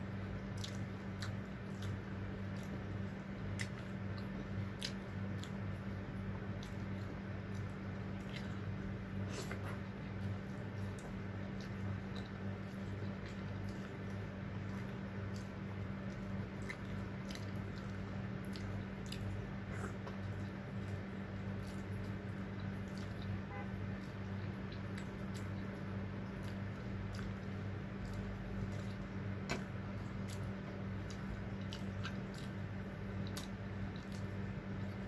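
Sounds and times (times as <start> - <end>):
close chewing mouth sounds: 0.0 - 35.0
low electrical hum: 0.0 - 35.0.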